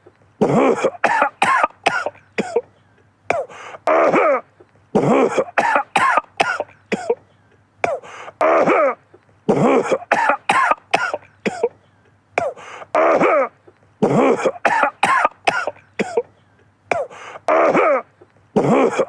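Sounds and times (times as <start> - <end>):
man coughing in fits: 0.4 - 11.8, 12.4 - 19.0.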